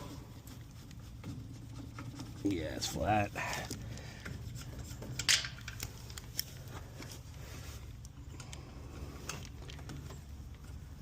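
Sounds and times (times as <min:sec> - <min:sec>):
small handling clicks: 0:05.2 - 0:07.2, 0:07.9 - 0:10.8.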